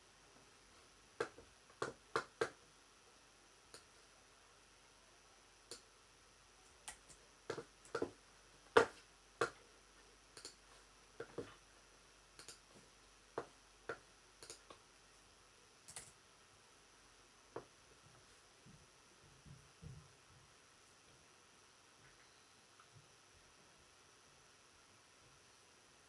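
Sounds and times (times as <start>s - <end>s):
sharp clicks and taps: 12.4s - 12.6s, 13.4s - 14.8s, 15.9s - 16.2s.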